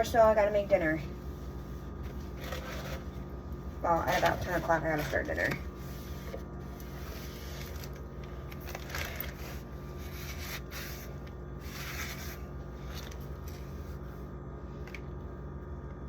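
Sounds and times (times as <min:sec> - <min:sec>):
steady low hum: 0:00.0 - 0:16.0
bottles scraping on fridge shelf: 0:01.5 - 0:03.3, 0:03.9 - 0:08.0.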